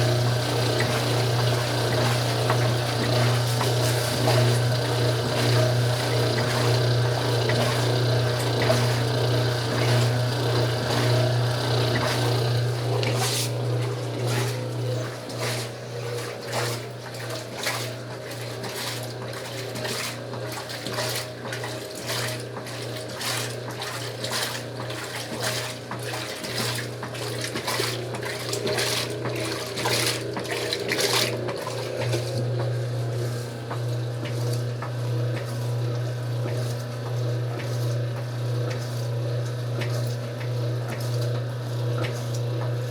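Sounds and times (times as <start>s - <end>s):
washing machine motor hum: 0.0s - 42.9s
water sloshing and splashing: 0.0s - 42.9s.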